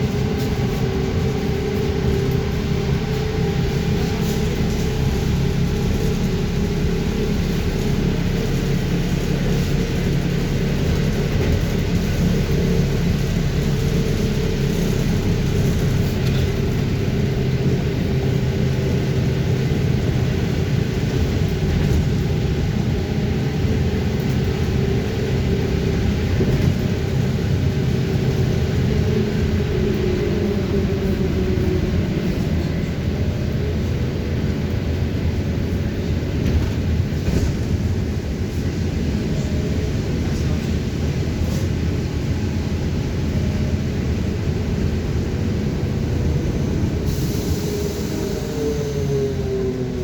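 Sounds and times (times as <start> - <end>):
rolling and road noise: 0.0 - 50.0.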